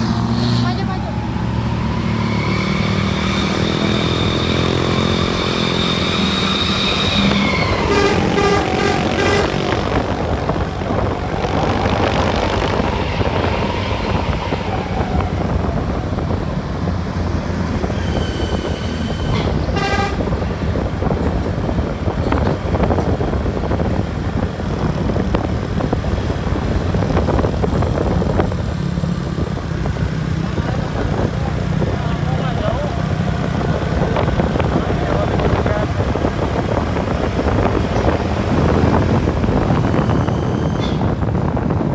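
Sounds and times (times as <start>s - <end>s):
bus engine: 0.0s - 41.9s
road noise: 0.0s - 41.9s
multi-tone bus horn: 3.4s - 12.8s, 17.8s - 21.2s.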